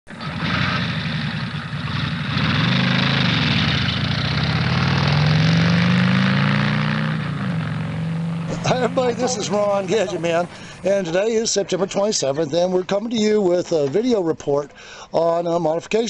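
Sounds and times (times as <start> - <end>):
pickup engine revving: 0.1 - 11.0.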